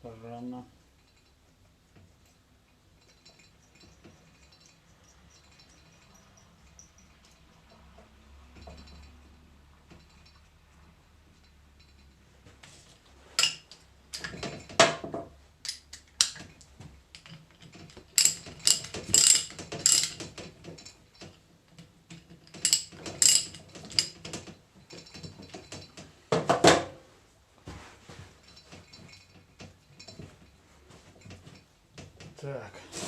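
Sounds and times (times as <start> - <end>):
ratchet wrench clicking: 18.2 - 20.2.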